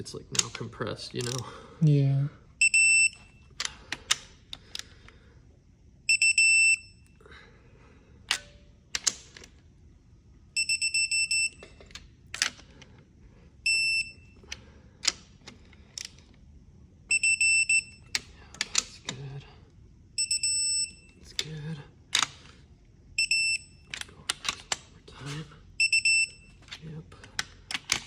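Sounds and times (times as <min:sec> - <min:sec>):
high-pitched wrench beeps: 0:02.6 - 0:03.4, 0:06.1 - 0:07.1, 0:10.6 - 0:11.6, 0:13.7 - 0:14.4, 0:17.1 - 0:18.2, 0:20.2 - 0:21.2, 0:23.2 - 0:23.9, 0:25.8 - 0:26.6.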